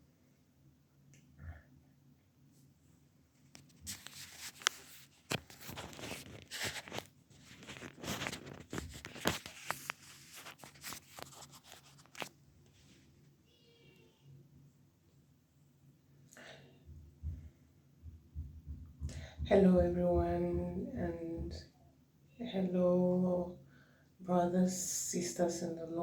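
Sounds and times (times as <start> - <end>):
rustling and crackling with clicks: 3.4 - 13.4.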